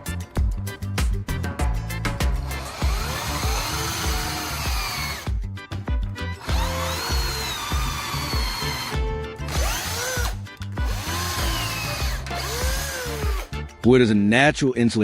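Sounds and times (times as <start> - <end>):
background music with steady beat: 0.0 - 15.0
electric drill running: 2.5 - 5.4, 6.4 - 13.5.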